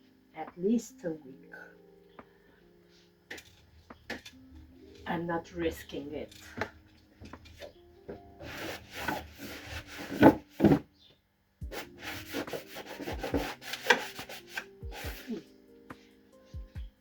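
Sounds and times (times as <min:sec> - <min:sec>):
food containers rubbing and scraping: 0:03.3 - 0:10.9, 0:11.7 - 0:15.5.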